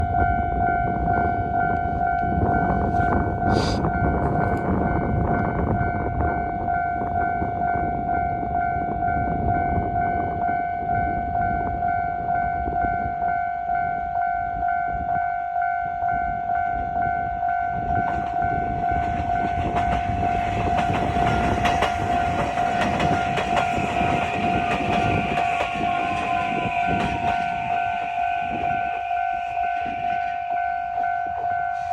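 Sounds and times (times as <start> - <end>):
train rumble and wheel noise: 0.0 - 31.9
level-crossing electronic bell: 4.9 - 31.9
falling whine: 19.9 - 31.9.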